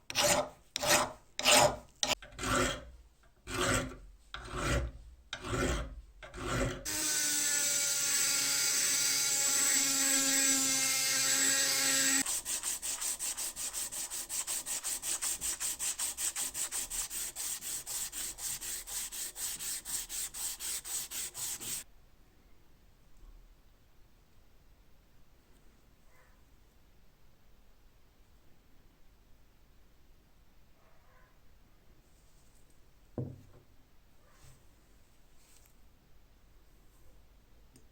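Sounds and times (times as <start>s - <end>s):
file rasping on steel: 0.1s - 21.8s.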